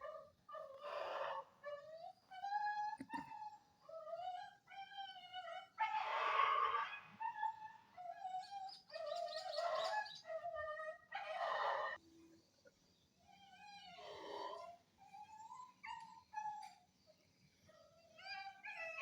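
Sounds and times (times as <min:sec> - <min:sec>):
dogs whining: 0:00.0 - 0:12.0, 0:13.3 - 0:17.0, 0:17.7 - 0:19.0
dog yelps: 0:04.1 - 0:12.0, 0:17.8 - 0:19.0.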